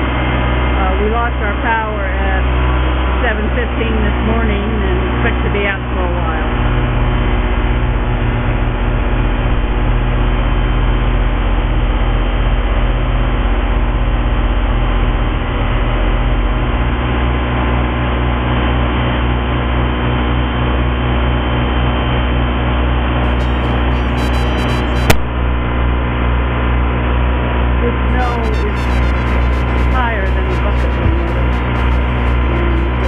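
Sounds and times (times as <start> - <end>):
snow blower: 23.2 - 25.2, 28.1 - 33.0
tractor engine running: 23.2 - 26.8, 28.0 - 33.0.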